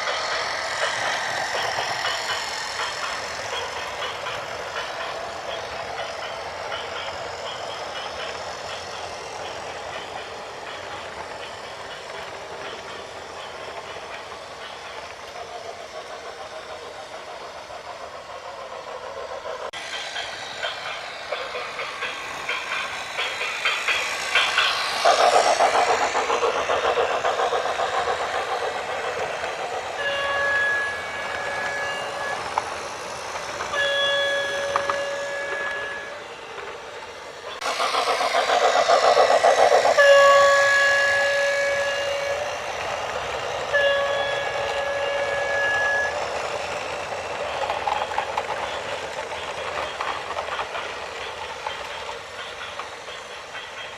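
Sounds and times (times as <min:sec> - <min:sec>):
train clattering past: 0:00.0 - 0:53.9
train horn blasts: 0:30.0 - 0:32.0, 0:33.8 - 0:36.1, 0:40.0 - 0:42.4, 0:43.7 - 0:46.1.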